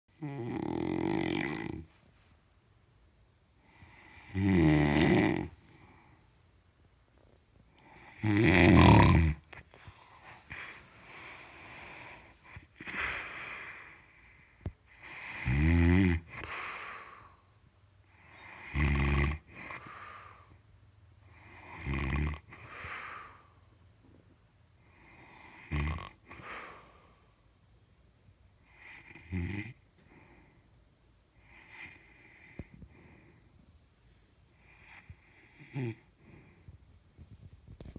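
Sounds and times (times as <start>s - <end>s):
deep rattling snores: 0.2s - 1.8s, 4.2s - 5.5s, 7.8s - 9.6s, 15.2s - 16.5s, 18.5s - 19.9s, 21.4s - 22.7s, 25.5s - 26.4s, 28.8s - 29.8s, 34.9s - 36.0s
soft breathing: 3.6s - 4.2s, 5.4s - 6.5s, 9.4s - 15.3s, 16.3s - 18.6s, 19.5s - 21.6s, 22.4s - 27.8s, 29.9s - 37.9s.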